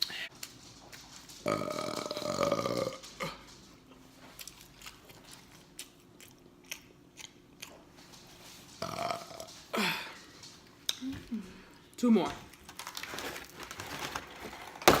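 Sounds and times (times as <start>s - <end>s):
person burping: 1.5s - 3.4s
chewing clicks and smacks: 4.3s - 7.9s.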